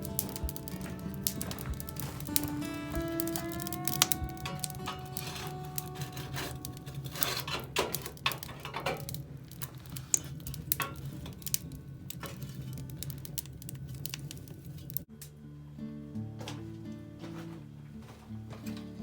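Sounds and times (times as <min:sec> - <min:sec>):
sharp clicks and clattering: 0:00.0 - 0:15.0
steady low hum: 0:00.0 - 0:15.1.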